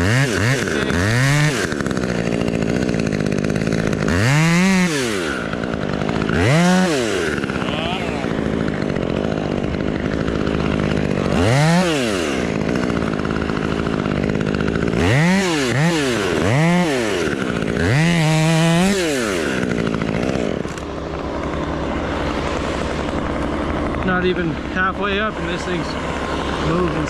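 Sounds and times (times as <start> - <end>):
chainsaw idling and revving: 0.0 - 27.0.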